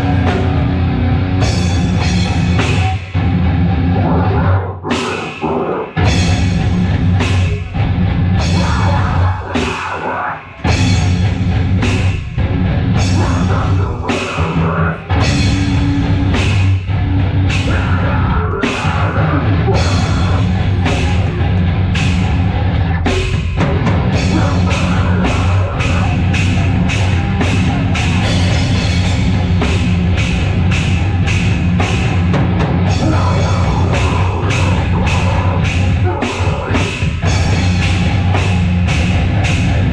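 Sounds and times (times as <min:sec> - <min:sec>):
drum kit pounding fast beat: 0:00.0 - 0:03.7, 0:06.0 - 0:39.9
heavy metal band playing: 0:00.0 - 0:39.9.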